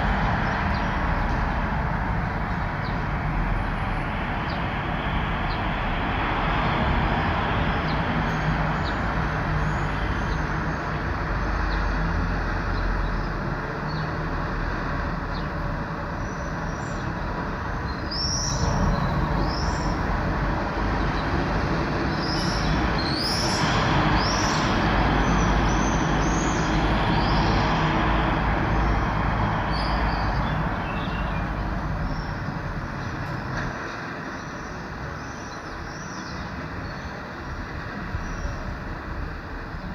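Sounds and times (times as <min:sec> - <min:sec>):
road traffic: 0:00.0 - 0:39.9
small birds chirping: 0:17.8 - 0:27.8, 0:29.7 - 0:37.4.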